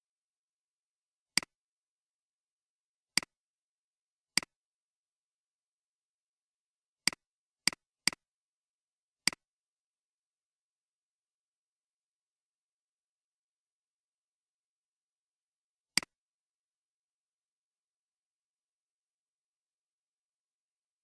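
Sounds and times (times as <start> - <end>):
computer mouse clicking: 7.1 - 8.2.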